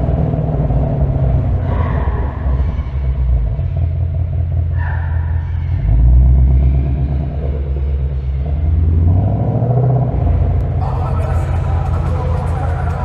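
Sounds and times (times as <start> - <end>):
car engine rumbling: 0.0 - 13.0.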